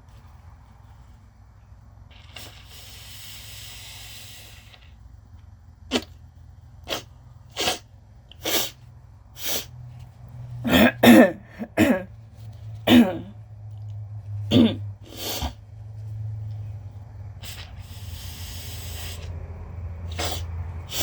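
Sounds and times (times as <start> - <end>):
woman coughing: 10.7 - 12.1, 12.9 - 13.3, 14.5 - 14.8.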